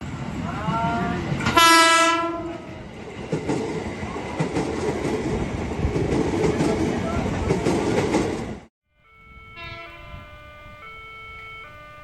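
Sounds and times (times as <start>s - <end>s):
train horn: 1.4s - 2.8s, 9.0s - 12.0s
train wheels clattering over rails: 2.5s - 8.7s.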